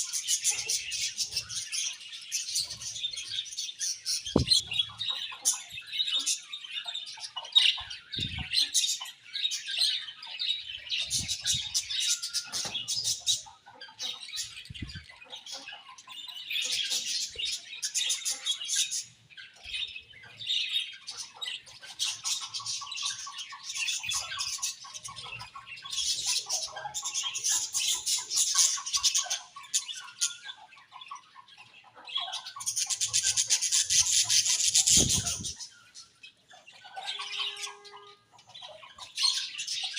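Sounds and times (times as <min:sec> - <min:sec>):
budgerigars chattering and chirping: 0:00.0 - 0:39.9
bird squawk: 0:04.0 - 0:06.5, 0:21.2 - 0:39.9
soft thumps: 0:04.4 - 0:04.8.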